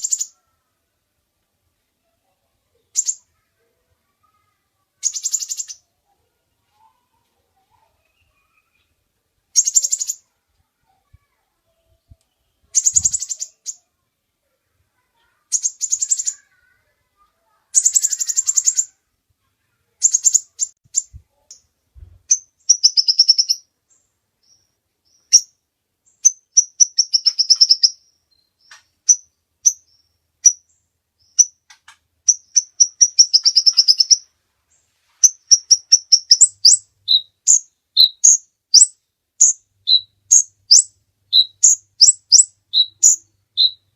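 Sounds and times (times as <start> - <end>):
bird singing high-pitched song: 0.0 - 0.5, 2.8 - 3.5, 5.0 - 5.9, 7.6 - 9.0, 9.6 - 10.3, 11.0 - 13.9, 15.4 - 16.8, 17.7 - 19.0, 20.0 - 21.7, 22.3 - 34.3, 35.2 - 43.9.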